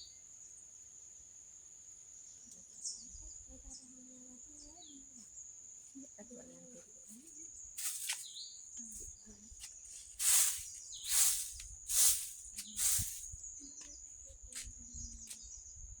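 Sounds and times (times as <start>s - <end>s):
loud hissing rushes: 7.8s - 8.2s, 10.2s - 13.4s
insect shrilling: 7.8s - 8.4s, 10.2s - 13.4s.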